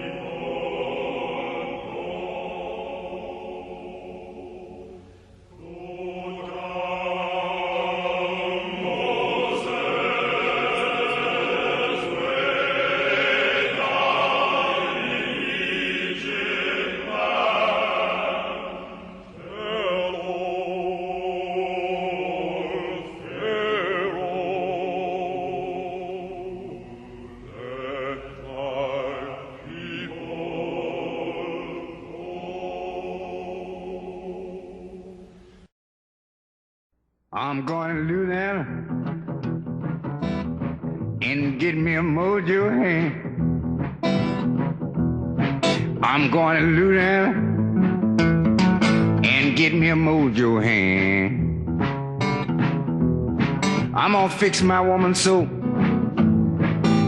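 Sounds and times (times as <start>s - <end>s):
choir singing long notes: 0.0s - 35.4s.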